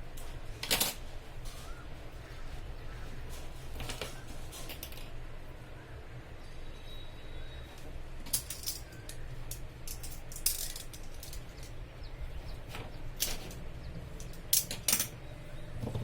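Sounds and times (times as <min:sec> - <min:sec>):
low steady hum: 0:00.0 - 0:16.0
hand tools clicking and scraping: 0:08.3 - 0:11.9.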